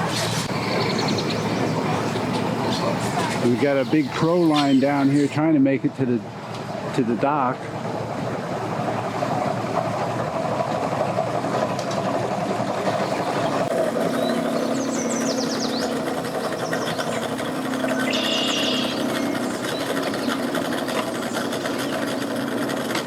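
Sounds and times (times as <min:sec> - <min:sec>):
outboard boat engines running: 0:00.0 - 0:23.0
steady low hum: 0:12.9 - 0:22.9.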